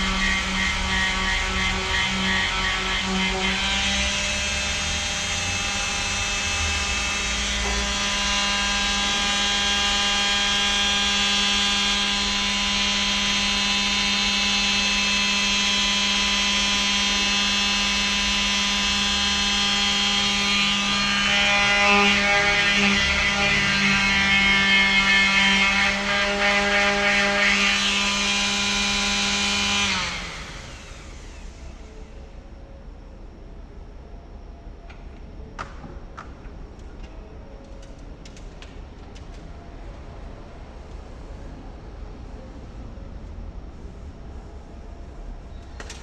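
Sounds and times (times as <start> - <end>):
electric sander on metal: 0.0 - 31.6.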